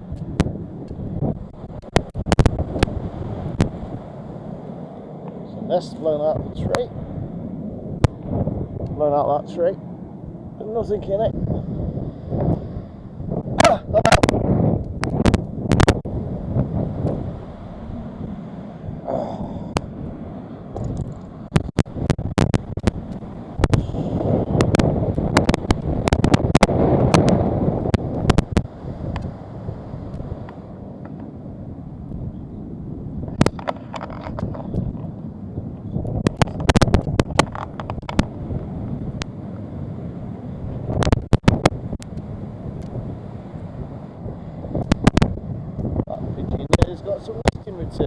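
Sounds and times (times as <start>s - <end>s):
wind buffeting microphone: 0.0s - 48.0s
sharp clicks and cracks: 0.1s - 3.8s, 13.6s - 16.0s, 19.7s - 19.9s, 20.8s - 29.4s, 33.3s - 35.2s, 35.8s - 39.7s, 40.9s - 43.0s, 44.8s - 45.9s, 46.6s - 47.7s.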